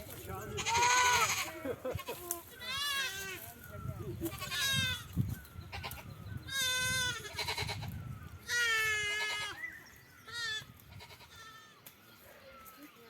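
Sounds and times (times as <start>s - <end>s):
goats bleating: 0.5s - 3.4s, 4.3s - 5.1s, 5.7s - 7.9s, 8.5s - 9.6s, 10.3s - 11.8s.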